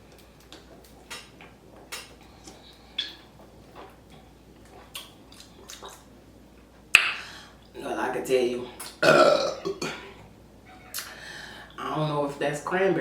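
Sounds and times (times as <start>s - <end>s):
person gulping: 0.5s - 6.2s, 8.8s - 10.3s.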